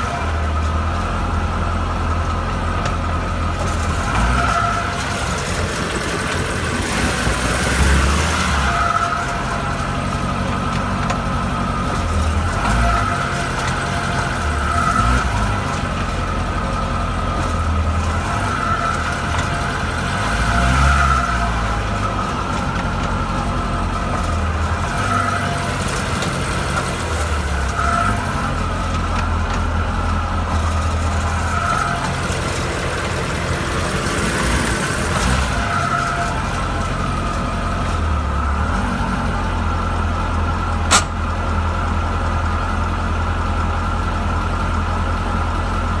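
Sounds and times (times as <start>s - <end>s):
car engine running: 0.0s - 46.0s
sharp click: 40.9s - 41.2s.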